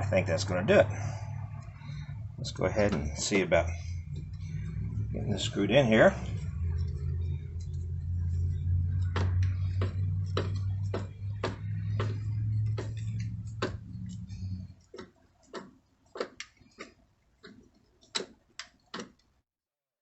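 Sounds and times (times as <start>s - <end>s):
low steady hum: 0.0s - 15.5s.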